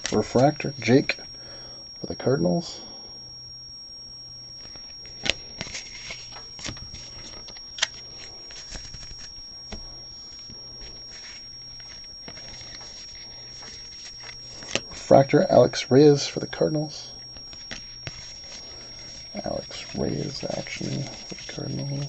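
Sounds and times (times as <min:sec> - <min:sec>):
faint steady hum: 0:00.0 - 0:22.0
high whine: 0:00.0 - 0:22.0
trading cards flipping and sliding: 0:04.6 - 0:15.1, 0:17.3 - 0:22.0.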